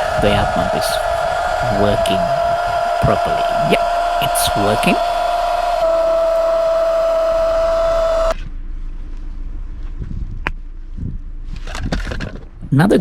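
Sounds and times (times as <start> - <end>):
electric air pump humming: 0.0 - 8.4.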